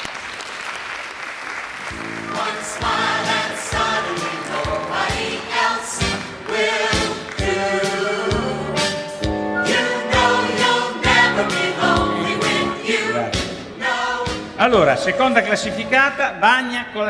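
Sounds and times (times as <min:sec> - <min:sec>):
applause: 0:00.0 - 0:02.0
choral singing over a beat: 0:01.9 - 0:16.0.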